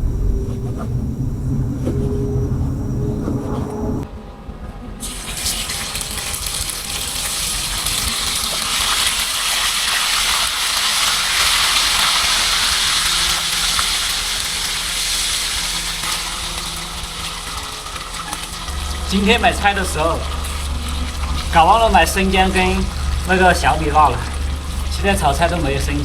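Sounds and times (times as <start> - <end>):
meat sizzling in hot oil: 5.0 - 19.2.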